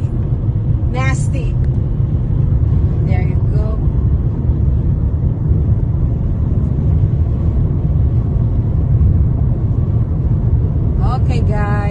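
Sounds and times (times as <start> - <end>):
gusty wind rumbling: 0.0 - 11.9.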